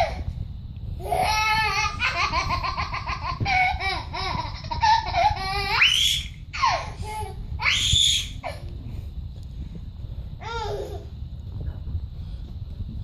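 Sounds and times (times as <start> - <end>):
baby laughing: 1.0 - 5.9.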